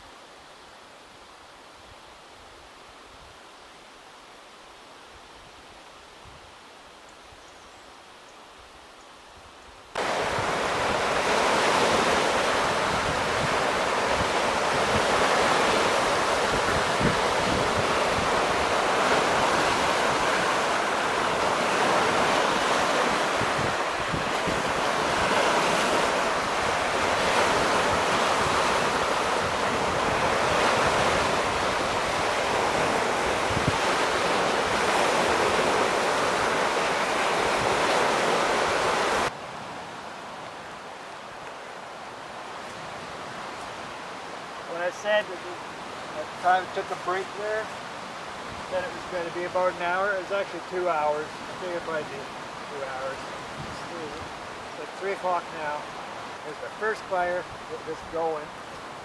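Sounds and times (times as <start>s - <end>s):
waves breaking on shore: 0.0s - 6.9s, 9.4s - 59.0s
wind on microphone: 10.0s - 40.0s, 53.2s - 54.7s.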